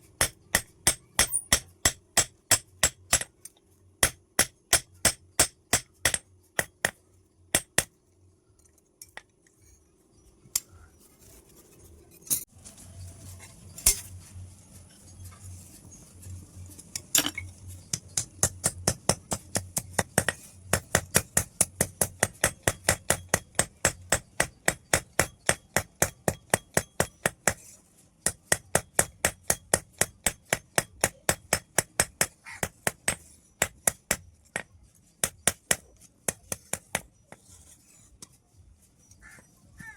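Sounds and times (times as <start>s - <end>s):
hammer on steel and anvil: 0.1s - 3.4s, 4.0s - 7.9s, 17.2s - 27.6s, 28.2s - 38.3s.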